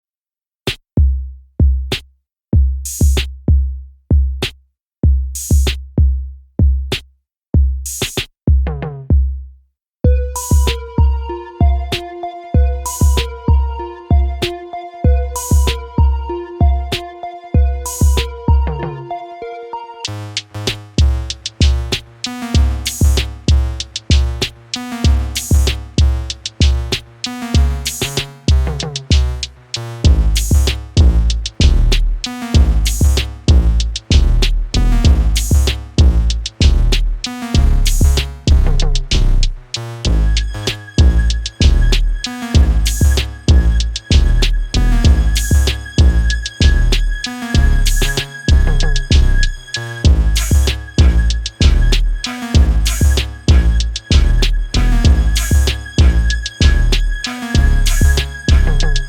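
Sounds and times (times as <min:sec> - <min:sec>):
bass drum beat: 0:00.7 - 0:09.5, 0:10.1 - 0:19.0, 0:20.4 - 0:59.0
drum fill falling in pitch: 0:10.1 - 0:19.2, 0:40.3 - 0:59.0
melodic synth notes: 0:10.1 - 0:26.2, 0:40.0 - 0:59.0
electronic dance music: 0:10.1 - 0:29.5, 0:30.1 - 0:59.0.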